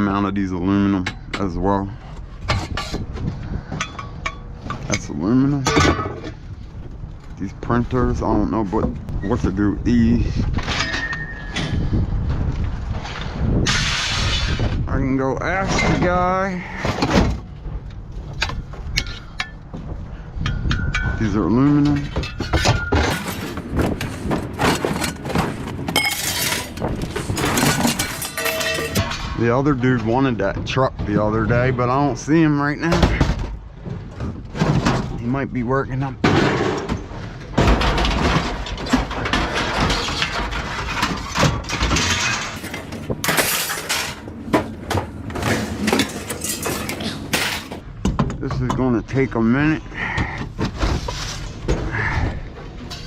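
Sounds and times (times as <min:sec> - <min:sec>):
metal scrap clanking onto pile: 0:13.6 - 0:14.7, 0:21.8 - 0:29.5, 0:36.2 - 0:47.8.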